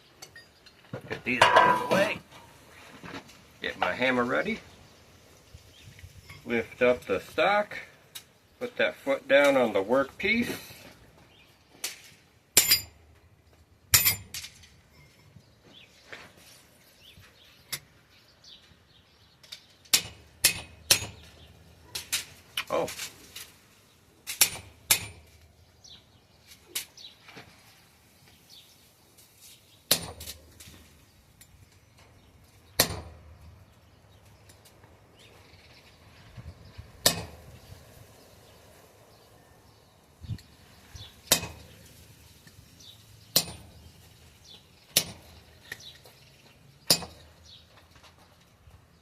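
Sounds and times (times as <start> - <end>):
hammer striking steel: 1.4 - 2.2.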